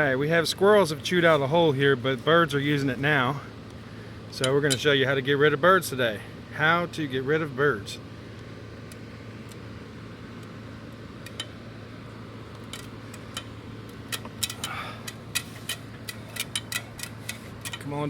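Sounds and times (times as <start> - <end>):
steady low hum: 0.0 - 18.0
light clicks and taps: 12.5 - 18.0.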